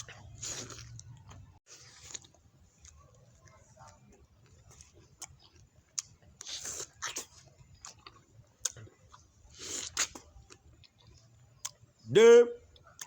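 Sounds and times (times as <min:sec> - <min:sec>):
wet mouth clicks and smacks: 0:09.8 - 0:10.3.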